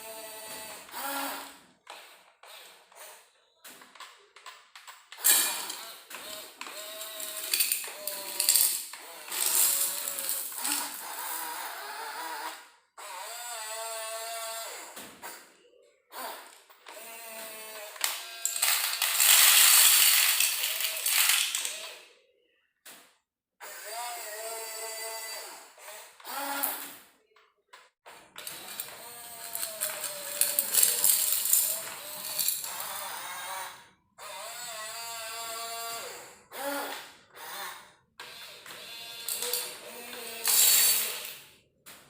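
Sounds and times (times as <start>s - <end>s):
electric motors whining and grinding: 0.0s - 2.9s, 5.1s - 15.0s, 16.2s - 22.0s, 23.6s - 26.9s, 28.3s - 41.5s.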